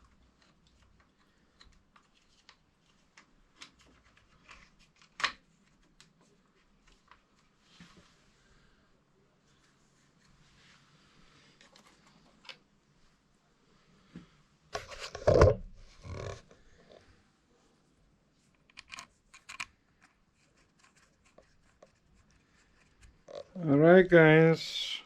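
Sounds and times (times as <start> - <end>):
rustling scrape: 14.8 - 16.4
faint scratching: 19.9 - 24.5.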